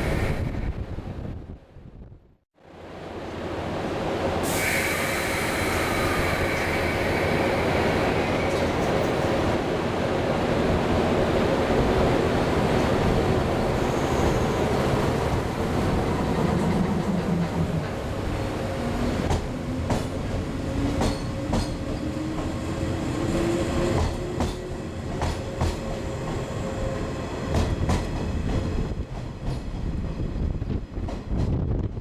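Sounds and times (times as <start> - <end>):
train hiss: 0.0 - 0.7, 4.3 - 8.8
train wheels rumbling on rail: 3.0 - 32.0.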